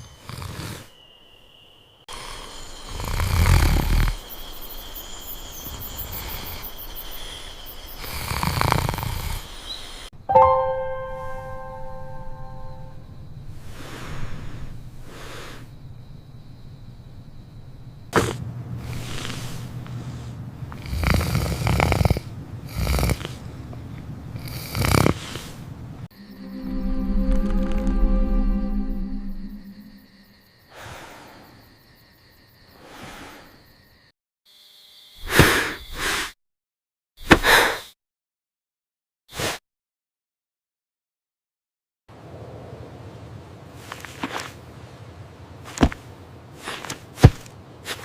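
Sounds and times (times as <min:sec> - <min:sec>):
person snoring: 0:02.1 - 0:04.2, 0:08.0 - 0:09.5, 0:20.8 - 0:23.4, 0:24.4 - 0:25.2
steady high-pitched trill: 0:26.2 - 0:30.3.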